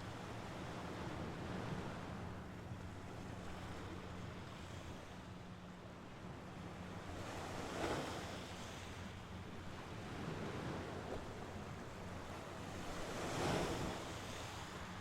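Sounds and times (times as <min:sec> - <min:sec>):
sea waves washing on shore: 0:09.6 - 0:15.0.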